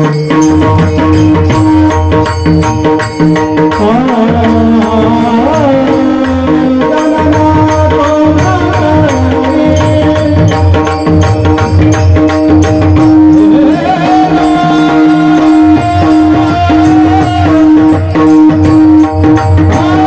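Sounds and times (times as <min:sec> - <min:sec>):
person singing: 0:00.0 - 0:02.5, 0:03.8 - 0:11.1, 0:12.9 - 0:20.0
hand drumming: 0:00.0 - 0:20.0
held drone notes: 0:00.0 - 0:20.0.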